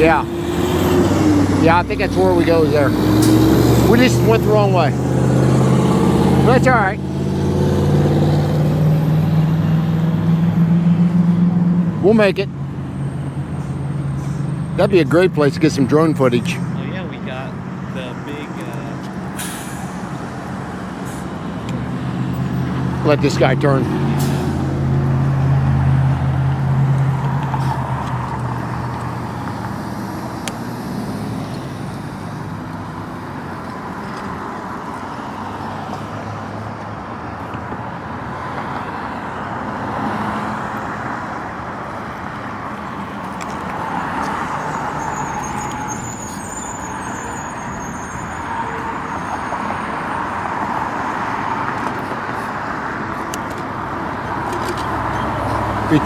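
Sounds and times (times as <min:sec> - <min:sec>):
vehicle engine running: 0:00.0 - 0:19.0
road and wind noise: 0:00.0 - 0:56.0.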